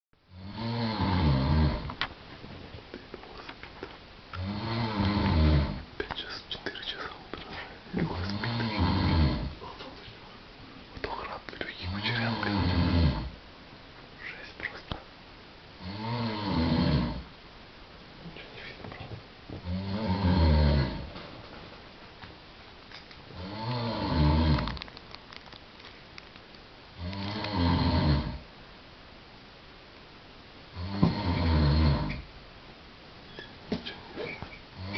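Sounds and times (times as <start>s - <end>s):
person snoring: 0.3s - 2.0s, 4.4s - 5.8s, 8.0s - 9.6s, 11.8s - 13.4s, 15.8s - 17.3s, 19.6s - 21.1s, 23.3s - 24.8s, 27.0s - 28.4s, 30.7s - 32.2s, 34.1s - 34.9s.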